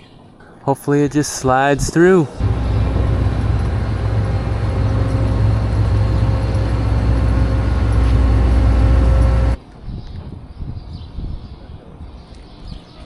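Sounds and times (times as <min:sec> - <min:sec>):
engine droning steadily: 0:02.4 - 0:09.6.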